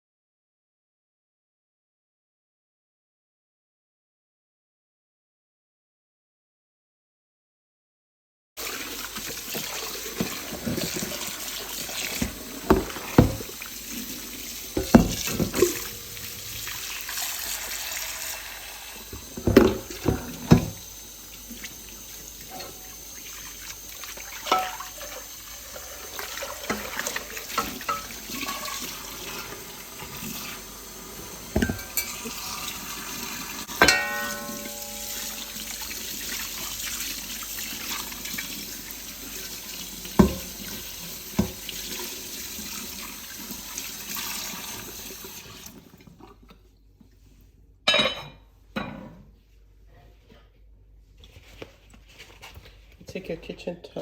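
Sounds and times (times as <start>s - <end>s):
kitchen tap running: 8.6s - 46.3s
heavy pot knocking against sink: 12.2s - 13.5s, 14.8s - 16.1s, 19.2s - 20.8s, 31.5s - 32.1s, 40.2s - 40.6s
short ringing clang: 33.8s - 35.4s.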